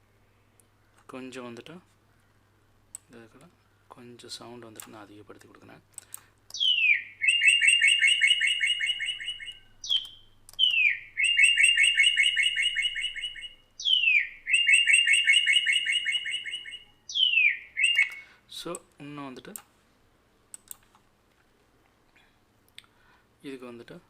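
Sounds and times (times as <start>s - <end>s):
bird whistle and chirping trill: 6.5s - 18.3s.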